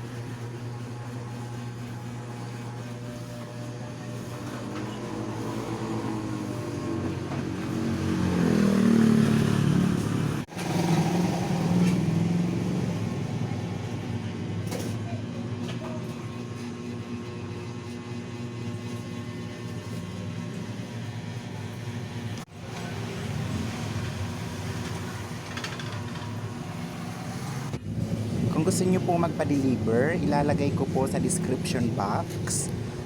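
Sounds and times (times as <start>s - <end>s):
vehicle engine passing: 4.5s - 14.3s, 22.6s - 25.4s
steady low hum: 27.7s - 33.0s.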